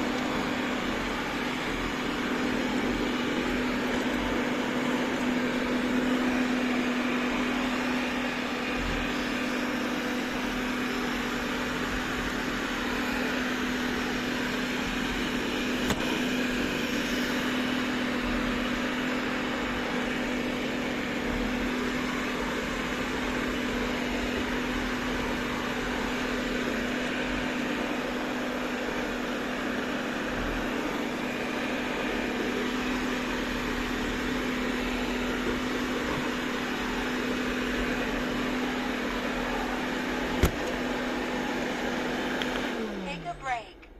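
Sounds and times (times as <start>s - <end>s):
robot vacuum cleaner running: 0.0s - 43.7s.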